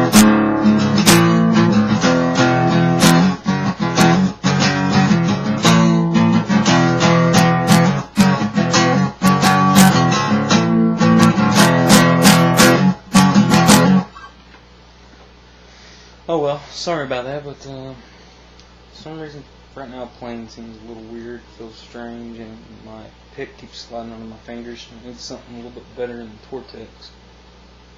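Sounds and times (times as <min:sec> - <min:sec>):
guitar strummed with a pick: 0:00.0 - 0:14.2.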